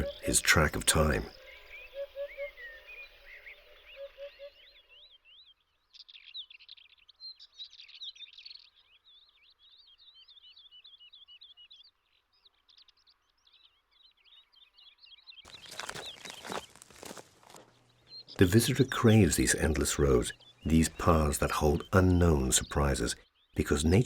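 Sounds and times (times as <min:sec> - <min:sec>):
birds chirping: 0:00.0 - 0:06.3, 0:15.4 - 0:24.0
rustling crunching noise: 0:15.5 - 0:21.0.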